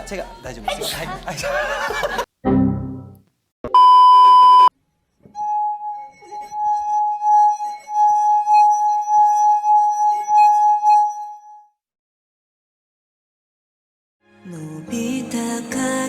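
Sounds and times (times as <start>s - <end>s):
short electronic beep: 3.7s - 4.7s.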